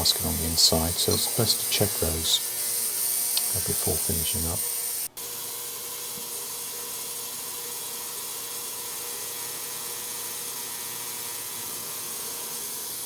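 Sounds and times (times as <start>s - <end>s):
ultrasonic cleaner hiss: 0.0s - 5.0s, 8.6s - 13.0s.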